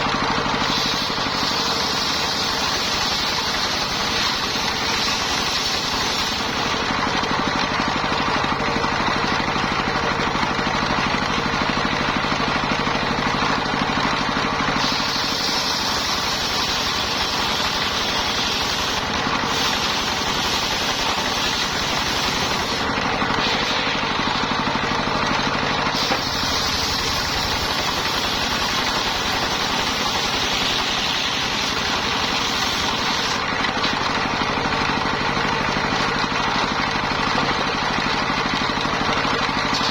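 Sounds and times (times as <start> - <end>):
saw blade cutting logs: 0.0 - 7.3, 11.2 - 34.3, 39.2 - 39.9
sawmill engine running: 0.0 - 39.9.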